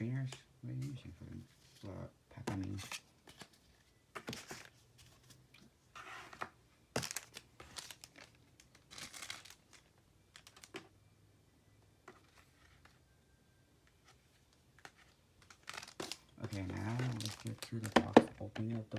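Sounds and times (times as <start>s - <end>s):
cards being handled: 0.2s - 11.0s, 13.9s - 18.9s
foil wrapper crinkling: 7.0s - 10.8s, 14.8s - 18.5s.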